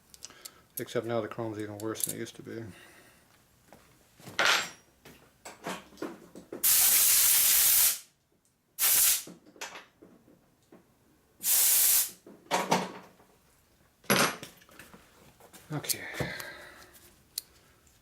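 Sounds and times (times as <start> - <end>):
small metal parts clicking: 1.6 - 2.2
pressurised spray hissing: 6.6 - 8.0, 8.8 - 9.3, 11.4 - 12.2.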